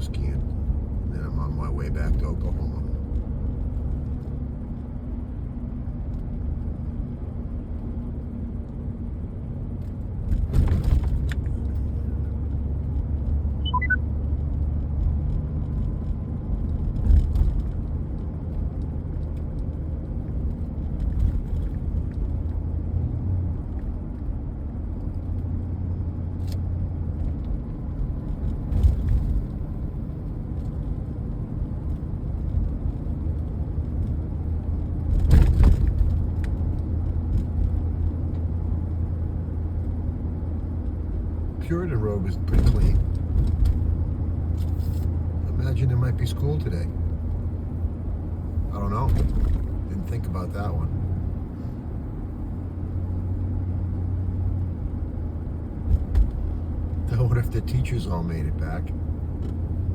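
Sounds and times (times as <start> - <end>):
engine and road rumble: 0.0 - 59.9
vehicle thumping over bumps: 10.3 - 11.3, 35.1 - 36.3, 55.7 - 56.8.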